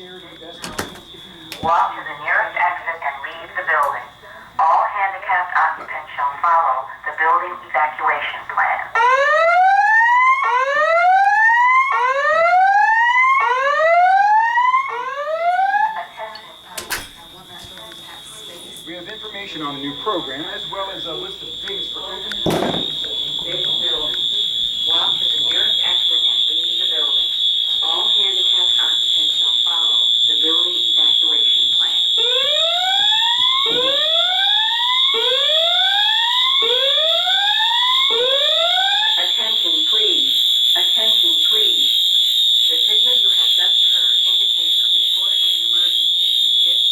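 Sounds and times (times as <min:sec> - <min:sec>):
spoken evacuation messages: 0:00.0 - 0:46.9
steady high-pitched tone: 0:15.6 - 0:46.9.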